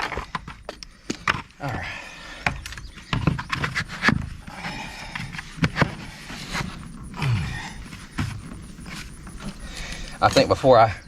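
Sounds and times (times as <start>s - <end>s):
hard plastic being handled: 5.1s - 10.6s.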